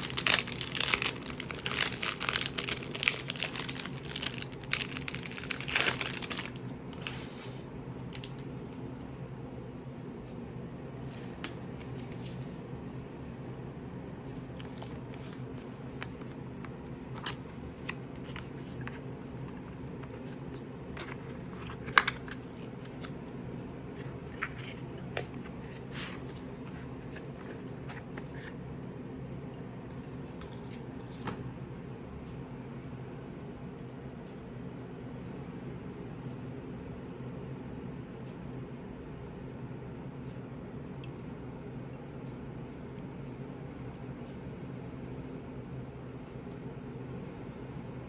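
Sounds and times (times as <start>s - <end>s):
packaging crinkling: 0.0s - 8.4s
steady low hum: 0.0s - 48.0s.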